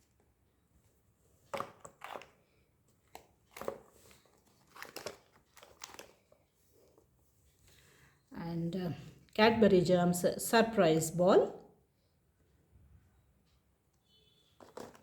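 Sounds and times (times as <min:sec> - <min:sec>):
plastic packets crinkling: 0:03.0 - 0:07.0, 0:14.6 - 0:15.0.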